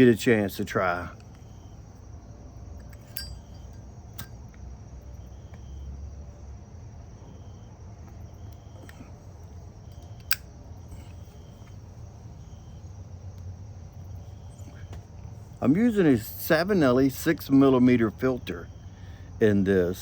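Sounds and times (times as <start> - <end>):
high insect chirps: 0.0 - 20.0
sharp clicks: 9.9 - 10.5.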